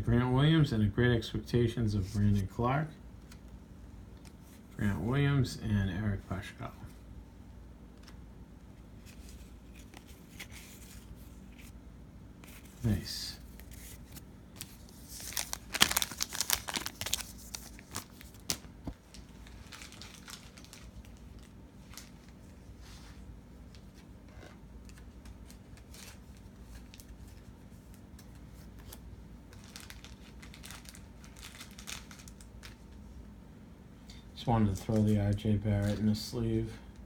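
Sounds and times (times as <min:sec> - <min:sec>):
plastic sleeve crinkling: 0:09.0 - 0:11.8, 0:12.4 - 0:33.1, 0:34.6 - 0:36.3.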